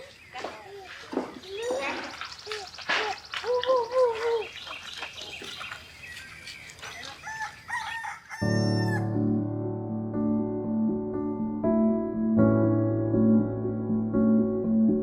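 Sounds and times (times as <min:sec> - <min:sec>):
small birds chirping: 0:00.0 - 0:08.2
rooster crowing: 0:07.0 - 0:09.1
gentle piano music: 0:08.4 - 0:15.0.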